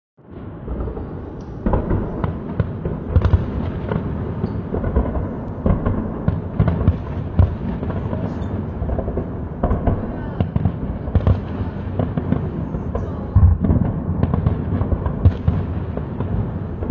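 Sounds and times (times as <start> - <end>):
sharp bangs and pops: 0.2 - 16.9
voices: 9.8 - 10.7, 12.4 - 13.7.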